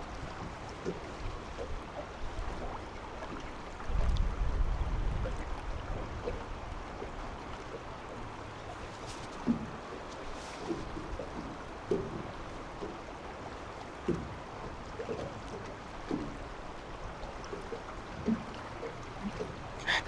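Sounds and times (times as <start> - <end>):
river current rushing: 18.6 - 20.0.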